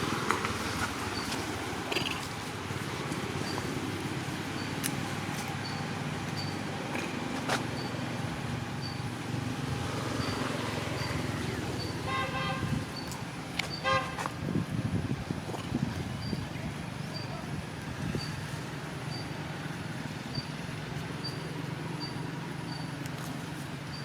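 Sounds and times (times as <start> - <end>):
outdoor background noise: 0.0 - 24.0
vehicle horn honking: 11.8 - 13.0, 13.8 - 14.2.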